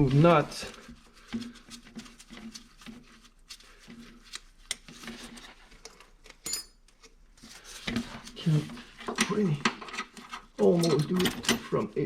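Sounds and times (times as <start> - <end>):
tools clicking and tapping: 5.8 - 7.2, 9.0 - 11.7
metallic clink: 6.4 - 6.8.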